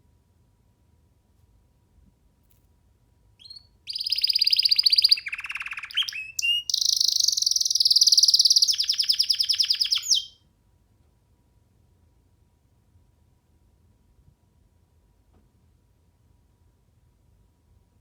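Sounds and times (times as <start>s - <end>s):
canary singing rapid trills: 3.4s - 10.4s.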